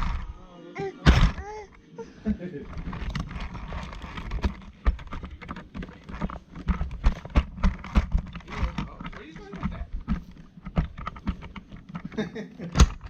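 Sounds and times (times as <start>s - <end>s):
plastic toy car knocking: 2.7s - 13.0s.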